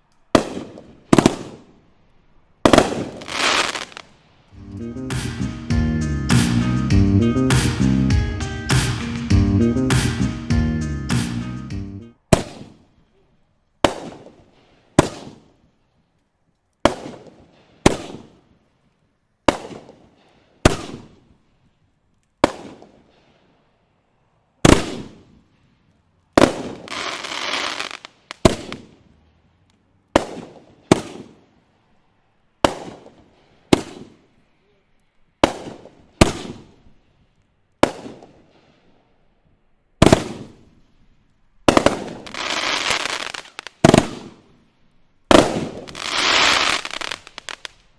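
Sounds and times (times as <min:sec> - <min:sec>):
fireworks crackling: 0:00.0 - 0:10.4, 0:11.1 - 0:11.5, 0:16.8 - 0:18.5, 0:24.6 - 0:29.2, 0:30.1 - 0:36.9, 0:40.0 - 0:47.9
fireworks bangs: 0:00.3 - 0:01.8, 0:02.6 - 0:04.2, 0:08.7 - 0:09.3, 0:09.9 - 0:10.3, 0:12.3 - 0:12.9, 0:13.8 - 0:15.5, 0:16.9 - 0:18.4, 0:24.6 - 0:25.4, 0:26.4 - 0:29.1, 0:30.1 - 0:31.5, 0:32.6 - 0:34.3, 0:35.4 - 0:36.8, 0:37.8 - 0:38.7, 0:40.0 - 0:40.8, 0:41.6 - 0:44.6, 0:45.3 - 0:47.9.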